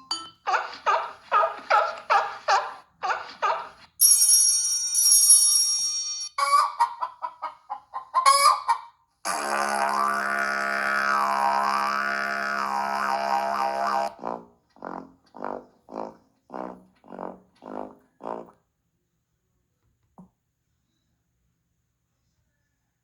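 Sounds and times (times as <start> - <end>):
bright bell-like chime: 4.0 - 6.4
short pitched pulses: 9.3 - 14.4.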